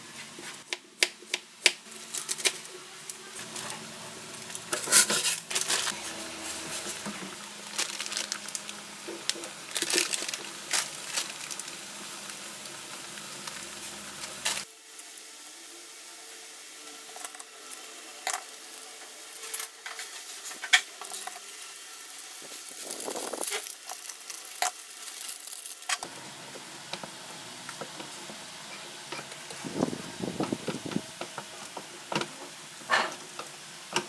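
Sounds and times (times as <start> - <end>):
plastic crinkling and clicks: 7.7 - 11.8.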